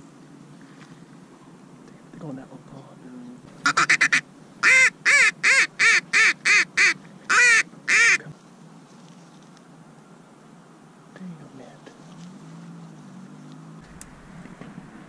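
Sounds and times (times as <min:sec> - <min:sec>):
goose call clucks and honks: 0:03.6 - 0:08.3.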